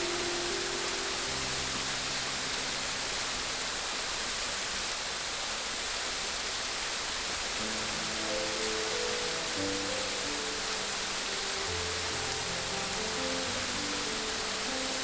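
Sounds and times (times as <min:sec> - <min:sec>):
soft held music notes: 0:00.0 - 0:04.1, 0:07.6 - 0:15.0
rushing water: 0:00.0 - 0:15.0.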